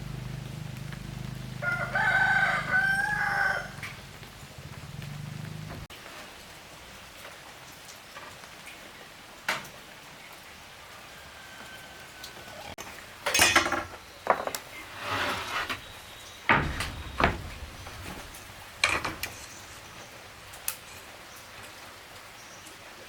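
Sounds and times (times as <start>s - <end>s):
hard objects clattering: 13.2s - 19.6s.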